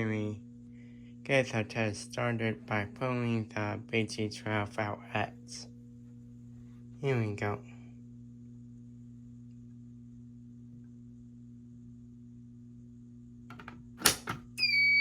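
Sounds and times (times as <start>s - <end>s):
low electrical hum: 0.0s - 15.0s
high-pitched fire alarm tone: 14.6s - 15.0s.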